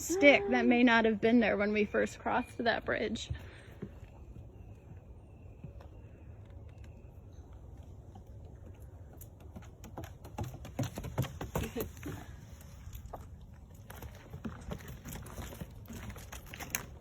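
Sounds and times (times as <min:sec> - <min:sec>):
footsteps on leaves and sticks: 0:12.9 - 0:17.0.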